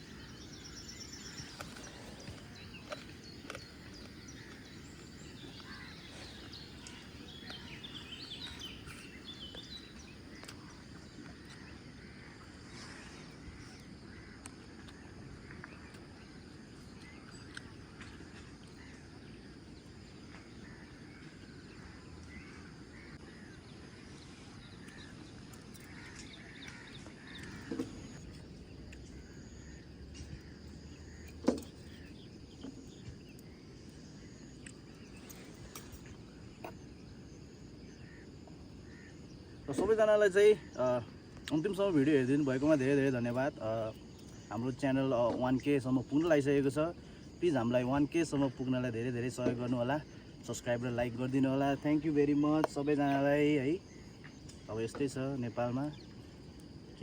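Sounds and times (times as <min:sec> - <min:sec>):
birds chirping: 0:00.0 - 0:12.0, 0:24.2 - 0:57.0
faint insect drone: 0:00.0 - 0:57.0.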